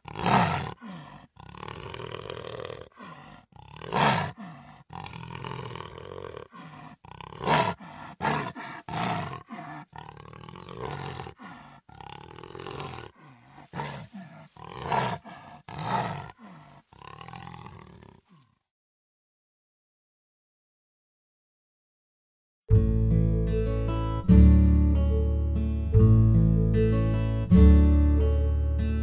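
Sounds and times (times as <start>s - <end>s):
jaguar growling and roaring: 0.0s - 18.4s.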